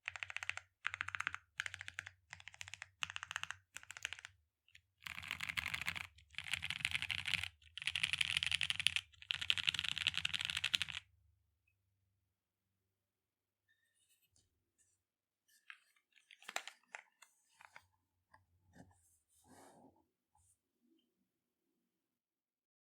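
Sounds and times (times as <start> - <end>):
typing on mechanical keyboard: 0.0 - 4.4, 5.0 - 11.1, 16.2 - 17.0.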